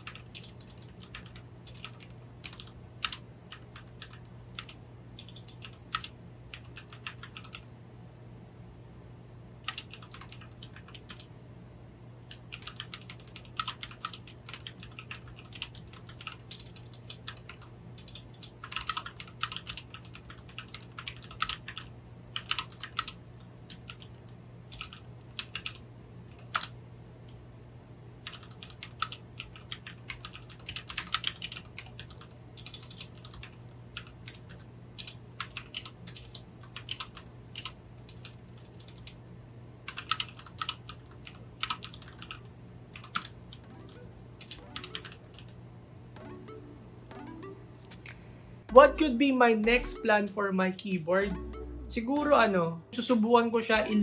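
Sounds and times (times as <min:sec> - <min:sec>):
mechanical keyboard typing: 0:00.0 - 0:07.6, 0:09.7 - 0:11.3, 0:12.3 - 0:26.7, 0:28.2 - 0:39.2, 0:39.9 - 0:45.6
faint low hum: 0:00.0 - 0:54.0.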